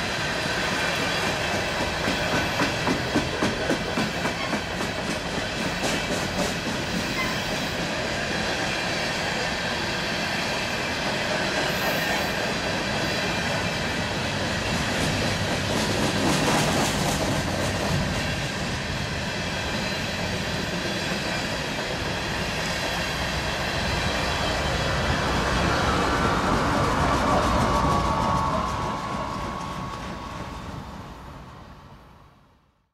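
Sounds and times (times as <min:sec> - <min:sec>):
train wheels clattering over rail joints: 0:00.6 - 0:08.4, 0:14.5 - 0:18.7.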